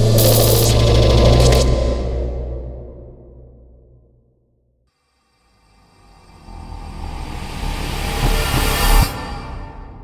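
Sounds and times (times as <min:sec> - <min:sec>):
bright hiss: 0:00.2 - 0:00.8.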